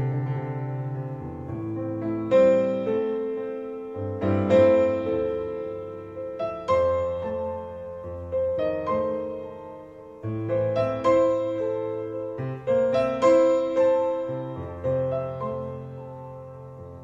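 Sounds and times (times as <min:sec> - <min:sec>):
slow piano chords over loudspeakers: 0:00.0 - 0:17.0.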